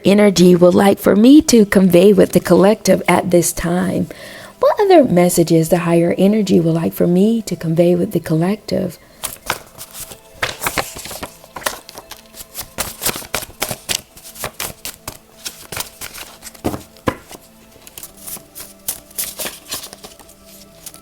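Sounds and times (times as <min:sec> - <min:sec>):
soft background music: 0:00.0 - 0:21.0
cards being shuffled: 0:09.2 - 0:21.0.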